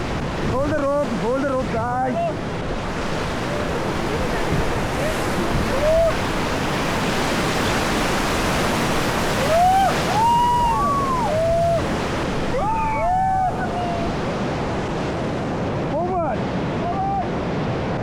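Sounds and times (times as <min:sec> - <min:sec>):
whitewater rushing: 0:00.0 - 0:16.0
rafters yelling: 0:09.4 - 0:14.2.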